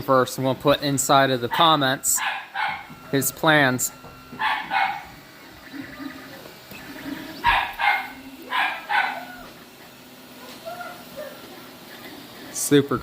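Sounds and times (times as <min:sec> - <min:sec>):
dog barking: 0:01.5 - 0:02.9, 0:04.4 - 0:05.1, 0:07.4 - 0:09.4.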